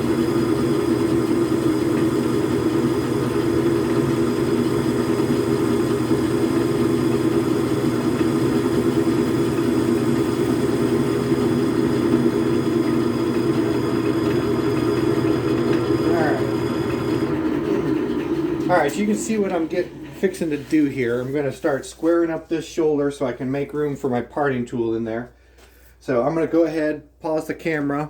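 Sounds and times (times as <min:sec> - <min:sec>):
machinery humming: 0:00.0 - 0:21.6.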